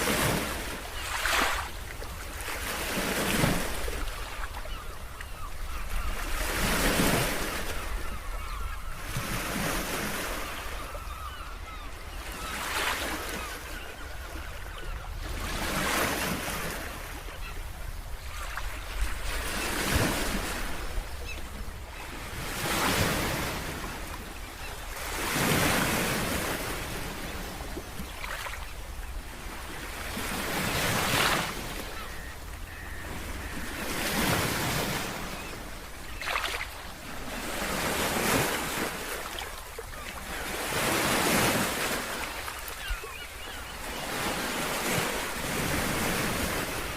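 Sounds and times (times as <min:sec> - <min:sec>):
sea waves washing ashore: 0:00.0 - 0:08.6.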